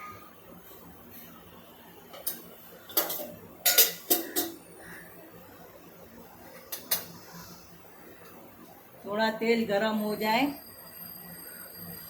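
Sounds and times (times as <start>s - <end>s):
metal cookware clinking: 2.1s - 4.6s.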